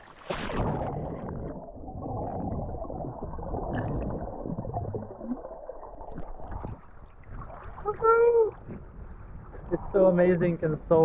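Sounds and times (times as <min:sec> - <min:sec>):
underwater gurgling and sloshing: 0:00.0 - 0:11.0.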